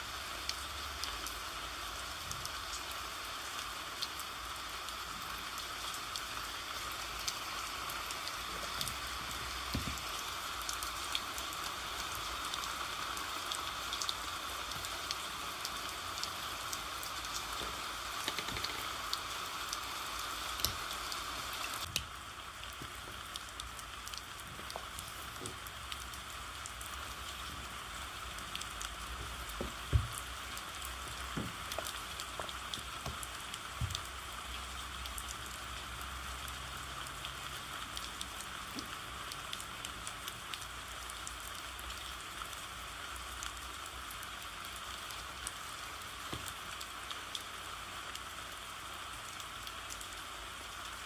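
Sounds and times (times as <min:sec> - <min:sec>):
steady rain falling: 0:00.0 - 0:51.0
soft knocks: 0:29.0 - 0:34.0.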